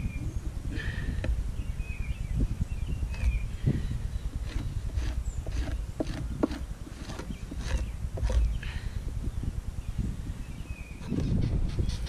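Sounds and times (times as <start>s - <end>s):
tool scraping hide: 4.4s - 8.6s.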